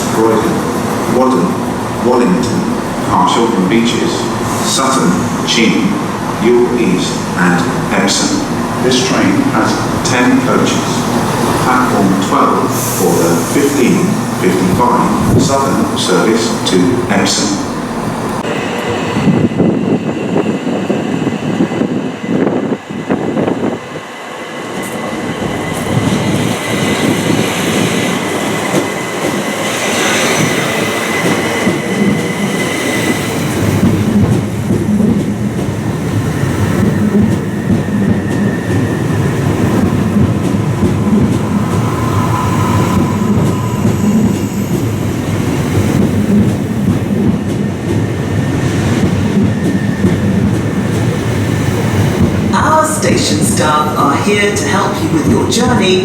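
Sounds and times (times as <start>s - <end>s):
train wheels running on rails: 0.0s - 56.0s
throbbing low hum: 40.1s - 45.4s.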